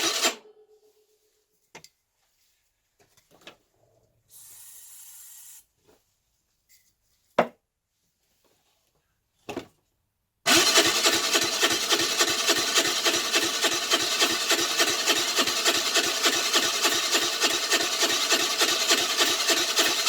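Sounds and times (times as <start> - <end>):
scooter engine cranking: 0.0 - 0.5, 10.5 - 20.0
short hiss: 4.3 - 5.7.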